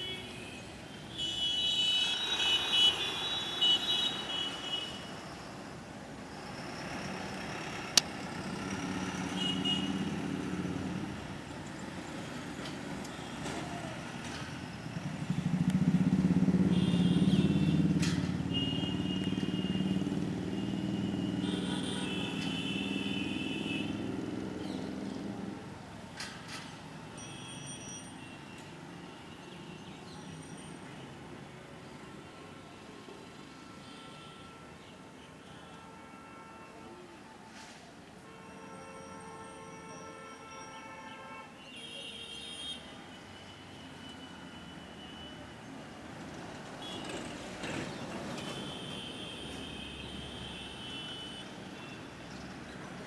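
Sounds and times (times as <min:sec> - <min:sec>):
vehicle engine passing: 0:06.5 - 0:12.0, 0:13.5 - 0:21.5, 0:23.8 - 0:25.7.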